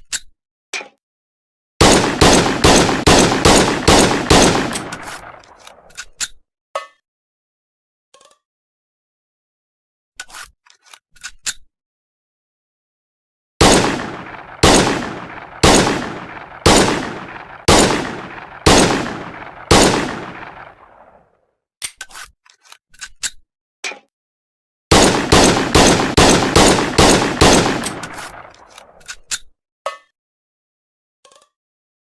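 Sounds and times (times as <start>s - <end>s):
pistol shots with ringing tail: 1.8s - 5.5s, 13.6s - 21.2s, 24.9s - 28.7s.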